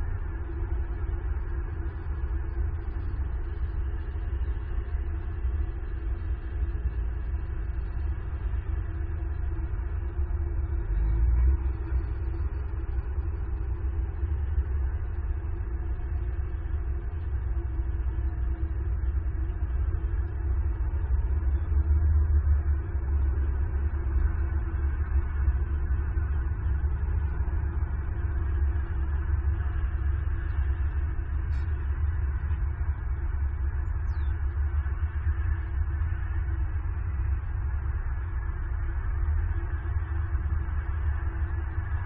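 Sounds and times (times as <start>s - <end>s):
faint constant hum: 0.0s - 42.0s
low outdoor rumble: 0.0s - 42.0s.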